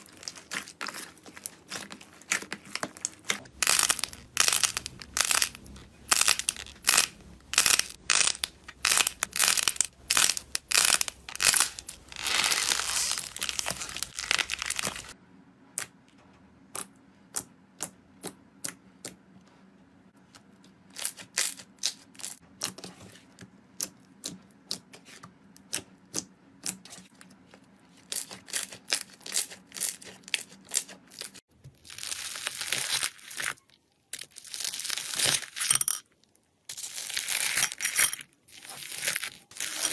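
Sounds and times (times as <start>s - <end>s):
slime crackling and popping: 0.0s - 15.2s.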